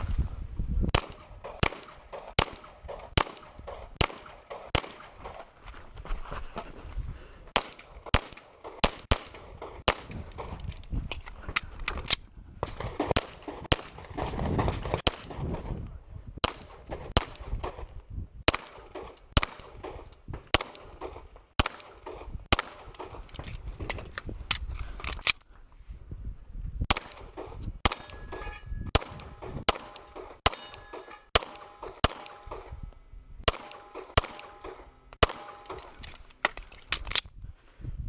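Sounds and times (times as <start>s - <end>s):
handgun shots: 26.9s - 32.8s, 33.5s - 37.2s.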